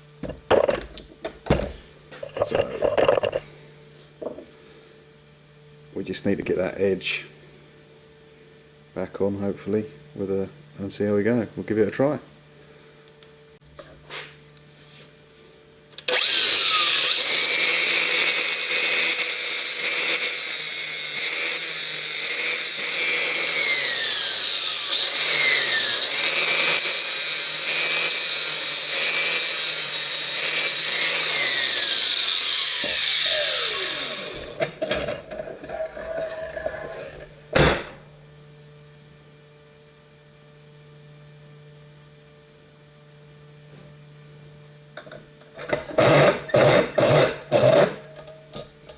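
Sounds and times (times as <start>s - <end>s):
angle grinder grinding steel: 16.0s - 37.2s, 45.6s - 48.2s.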